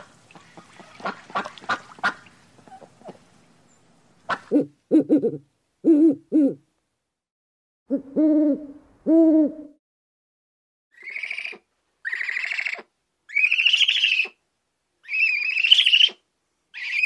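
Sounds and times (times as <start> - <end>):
bird hooting: 4.3 - 6.6, 7.9 - 9.8.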